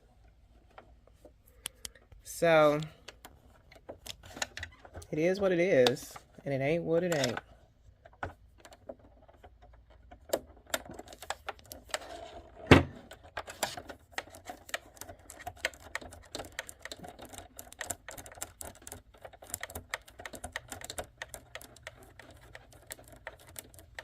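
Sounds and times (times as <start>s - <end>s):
hands clicking sewing machine parts: 7.0s - 7.4s, 13.0s - 24.0s.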